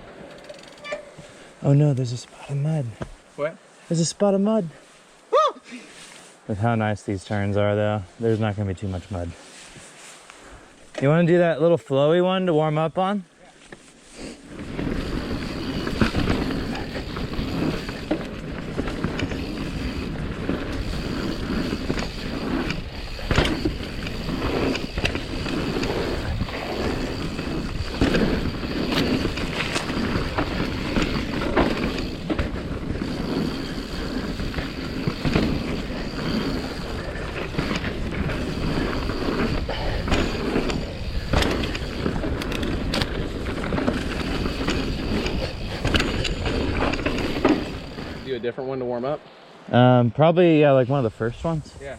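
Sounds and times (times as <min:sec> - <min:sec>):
bike tyres rolling over dirt: 0:00.0 - 0:03.2, 0:13.7 - 0:48.5
bike knocks and rattles: 0:14.6 - 0:48.2.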